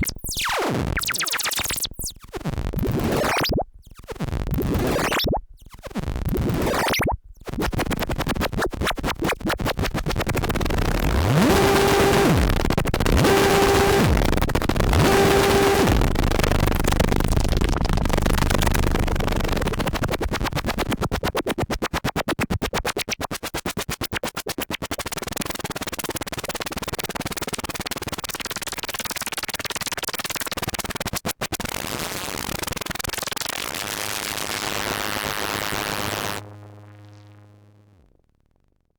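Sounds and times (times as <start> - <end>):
harsh pulsing synthesizer noise: 10.2 - 20.0, 34.6 - 38.1
short pitched synth notes: 35.8 - 38.0.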